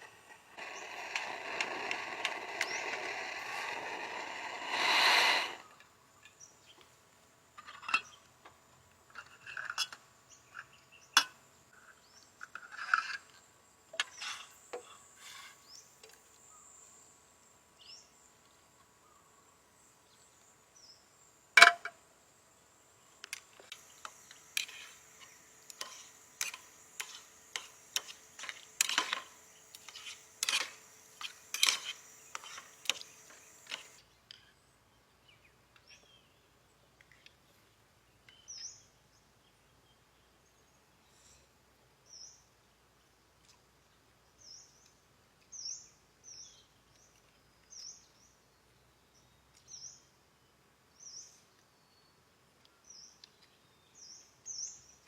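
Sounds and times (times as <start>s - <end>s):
high insect drone: 23.5s - 34.0s
bird chirps and clicks: 44.8s - 45.7s, 49.4s - 49.8s, 52.6s - 53.7s.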